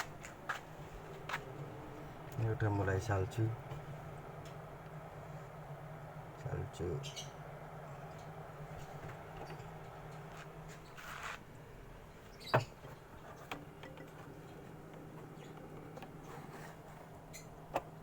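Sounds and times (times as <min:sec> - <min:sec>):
refrigerator compressor humming: 0:00.0 - 0:18.0
small clicks and knocks: 0:12.4 - 0:18.0.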